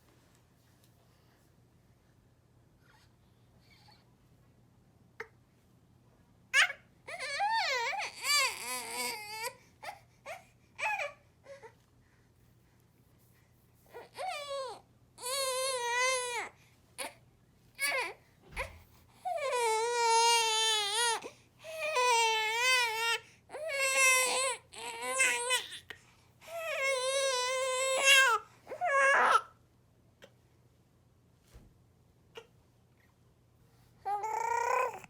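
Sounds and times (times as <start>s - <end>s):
baby crying: 6.6s - 11.7s, 14.0s - 17.2s, 19.2s - 25.8s, 26.5s - 29.5s, 34.1s - 35.0s.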